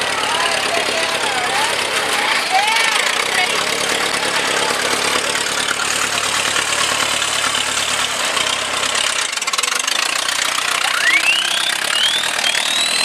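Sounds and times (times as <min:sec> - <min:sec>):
car engine humming: 0:00.0 - 0:13.0
short rising whistles: 0:10.8 - 0:13.0.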